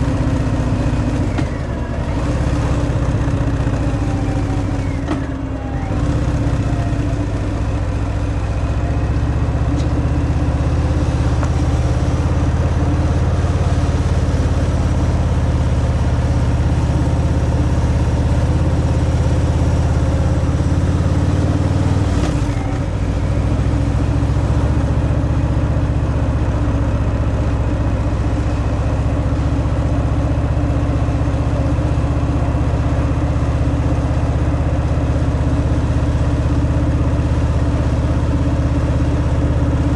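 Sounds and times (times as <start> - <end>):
motorcycle engine running: 0.0 - 39.9.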